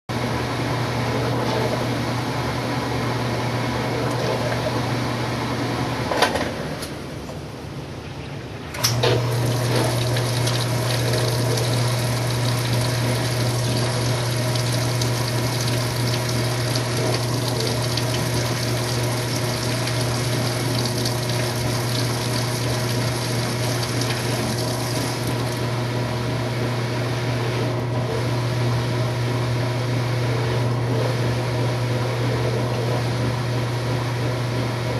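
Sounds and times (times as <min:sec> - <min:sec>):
washing machine humming: 0:00.1 - 0:34.9
washing machine clicking: 0:08.7 - 0:25.8
water rushing: 0:09.4 - 0:25.6.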